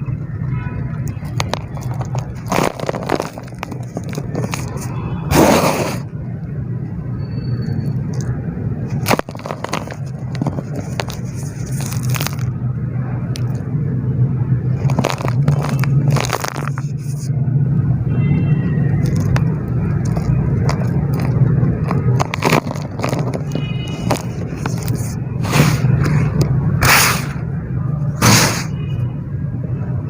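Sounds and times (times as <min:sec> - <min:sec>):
dirt crunching and crackling: 0:00.0 - 0:06.1, 0:07.9 - 0:13.8, 0:14.5 - 0:17.4, 0:18.8 - 0:27.4.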